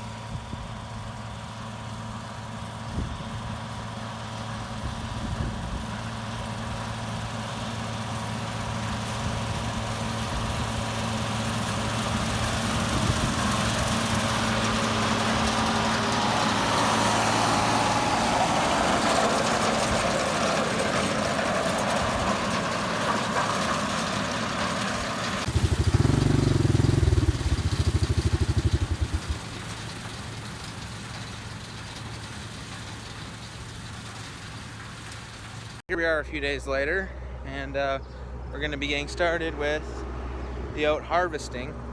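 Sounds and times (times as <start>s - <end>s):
windrower engine running: 0.0s - 35.8s
loud low rumble: 25.5s - 29.6s.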